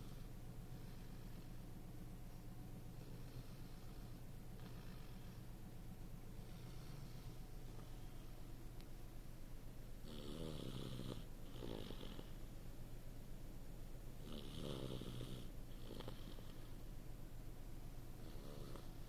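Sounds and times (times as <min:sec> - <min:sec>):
low steady hum: 0:00.0 - 0:19.0
child snoring: 0:10.0 - 0:12.4, 0:14.2 - 0:16.6, 0:18.2 - 0:19.0.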